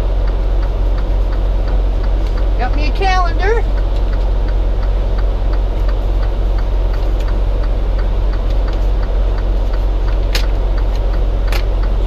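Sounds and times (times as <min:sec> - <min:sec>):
light regular ticking: 0:00.0 - 0:12.0
truck engine and road noise: 0:00.0 - 0:12.0.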